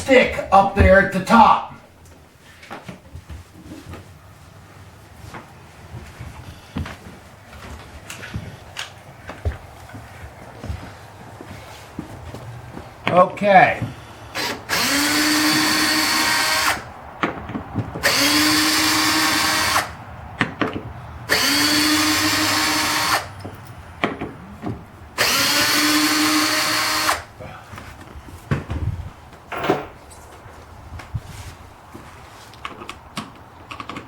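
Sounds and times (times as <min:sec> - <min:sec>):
power drill whining: 0:14.3 - 0:16.9, 0:18.0 - 0:20.0, 0:21.3 - 0:23.3, 0:25.2 - 0:27.3
small clicks and knocks: 0:32.5 - 0:34.0.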